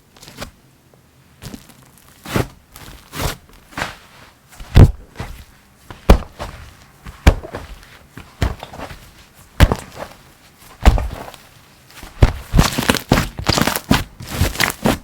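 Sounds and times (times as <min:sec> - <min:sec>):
slime slapping and popping: 0:12.2 - 0:15.0.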